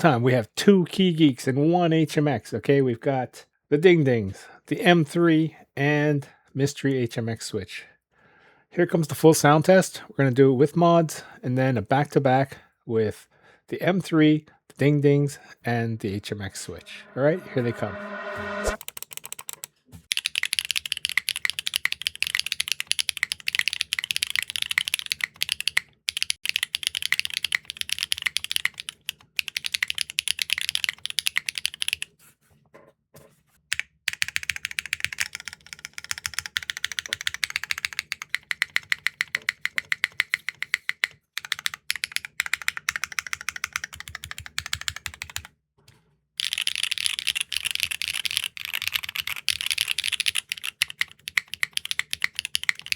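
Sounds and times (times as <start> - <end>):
fast typing on mechanical keyboard: 18.8 - 32.1, 33.7 - 45.5, 46.4 - 52.9.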